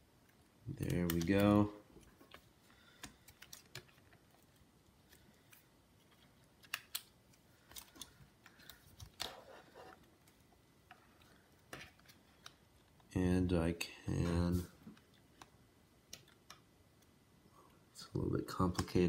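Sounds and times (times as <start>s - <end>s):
small clicks of laptop parts: 5.1s - 9.4s.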